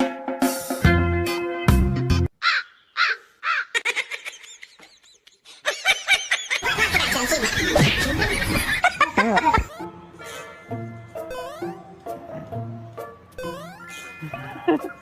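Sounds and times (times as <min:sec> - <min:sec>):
animal calls: 0:02.4 - 0:04.0, 0:13.5 - 0:15.0.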